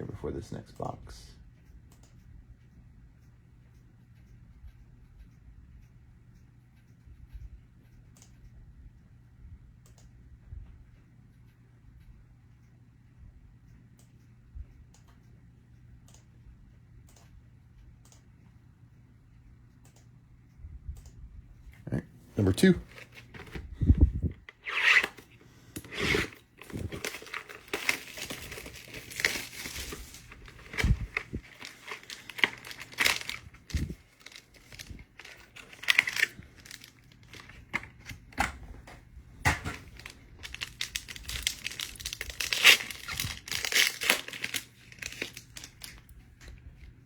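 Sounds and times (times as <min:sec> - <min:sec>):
card packs being torn open: 0:24.5 - 0:38.6, 0:39.5 - 0:46.1.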